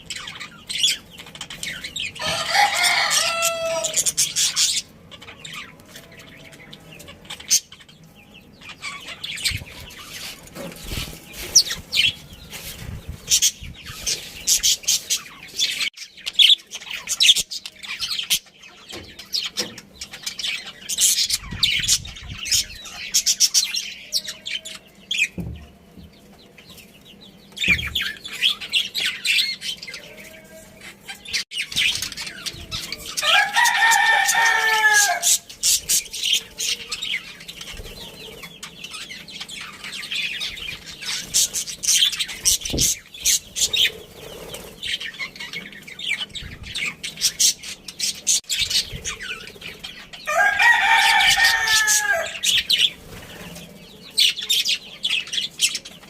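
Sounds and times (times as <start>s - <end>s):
budgerigars chirping: 0.0s - 5.8s, 30.8s - 56.0s.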